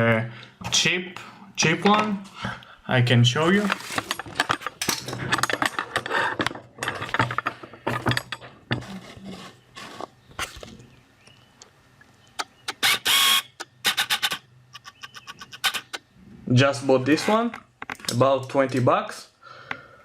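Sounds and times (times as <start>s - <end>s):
clicks and knocks from handling objects: 3.5s - 11.7s, 17.3s - 18.8s
rasping burst: 12.4s - 16.0s.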